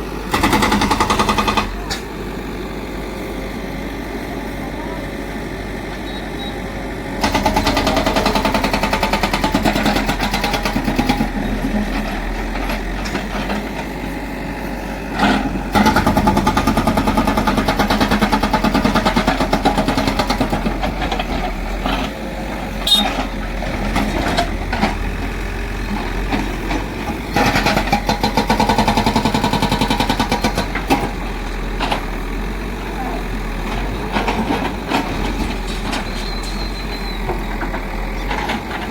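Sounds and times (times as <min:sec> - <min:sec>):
backhoe diesel engine running: 0:00.0 - 0:38.9.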